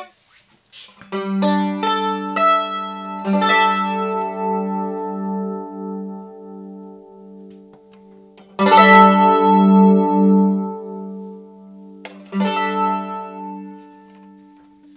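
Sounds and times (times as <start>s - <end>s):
mandolin chords strummed: 1.0s - 14.9s.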